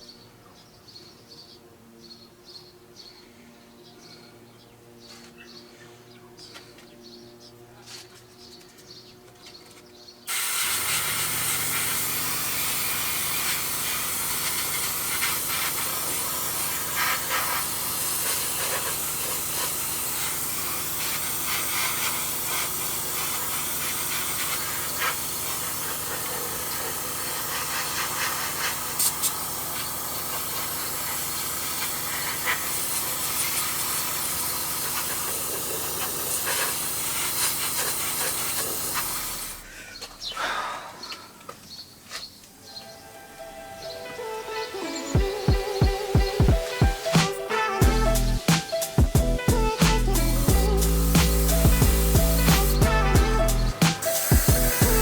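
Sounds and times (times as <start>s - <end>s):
airbrush spraying hiss: 10.3s - 39.7s, 44.8s - 55.0s.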